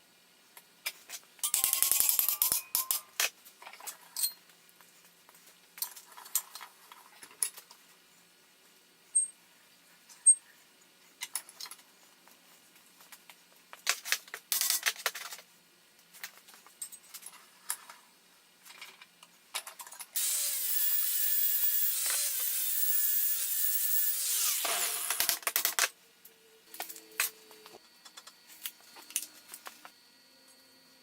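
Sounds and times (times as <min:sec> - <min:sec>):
handheld power tool running: 0:20.2 - 0:25.4.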